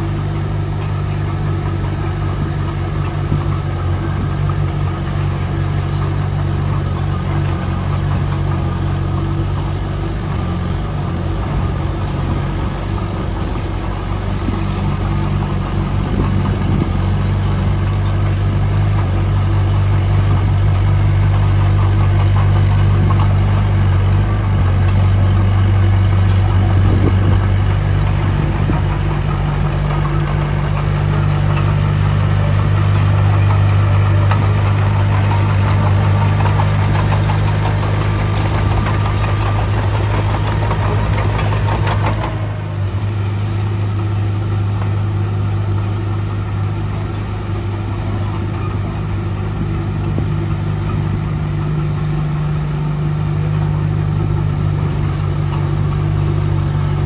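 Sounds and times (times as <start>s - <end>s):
diesel engine running: 0.0s - 57.0s
clicking and rattling: 10.7s - 43.8s.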